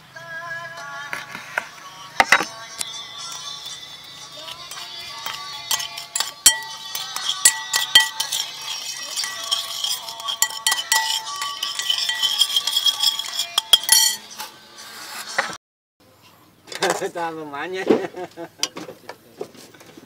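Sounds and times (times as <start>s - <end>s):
music playing: 1.5s - 14.8s
metal utensils clinking on pots: 4.5s - 14.4s.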